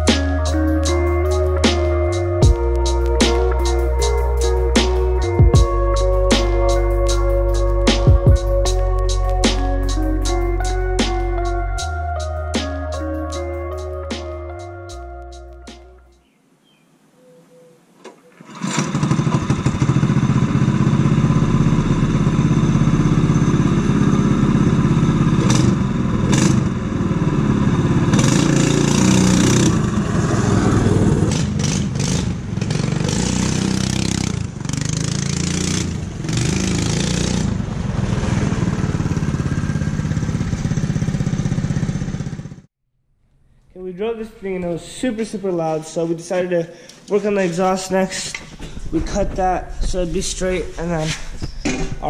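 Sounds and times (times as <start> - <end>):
small gas engine revving: 18.3 - 42.7.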